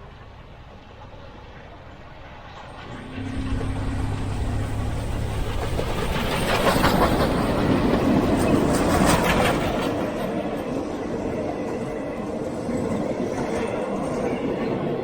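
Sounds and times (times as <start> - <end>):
train passing with low hum: 0.0 - 15.0
wheel clatter over rail joints: 2.5 - 10.7.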